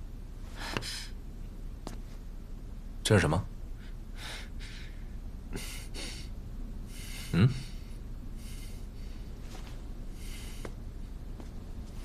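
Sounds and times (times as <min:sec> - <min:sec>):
soft breath: 0:03.8 - 0:11.2.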